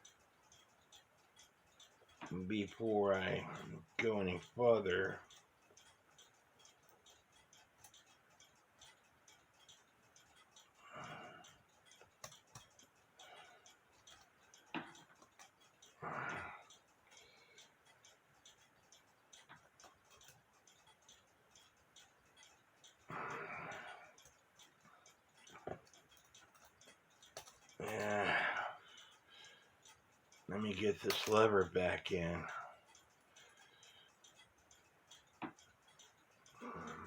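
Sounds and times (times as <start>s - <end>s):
clicks and taps of metal parts: 11.9s - 12.8s, 14.0s - 15.6s, 25.5s - 28.1s, 30.8s - 31.8s.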